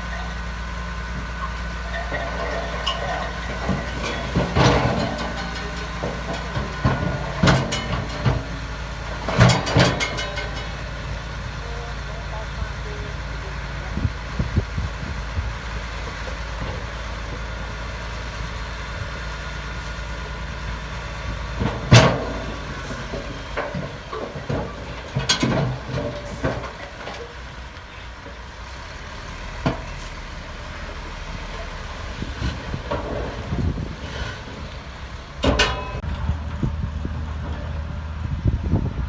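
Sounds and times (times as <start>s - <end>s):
diesel construction machinery running: 0.0s - 39.0s
clattering knocks: 2.0s - 11.0s, 21.6s - 27.4s.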